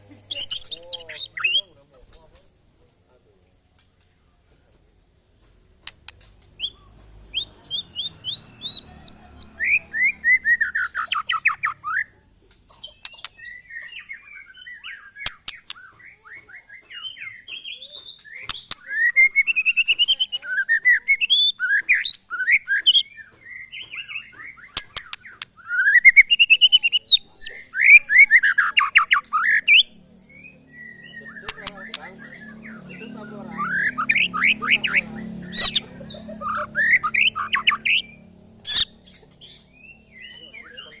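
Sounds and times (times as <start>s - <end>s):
birds singing rapid falling notes: 0.3s - 2.6s, 5.8s - 41.0s
sharp clicks: 5.8s - 6.7s, 12.5s - 13.5s, 15.2s - 15.9s, 18.1s - 18.9s, 24.6s - 25.6s, 31.4s - 32.1s.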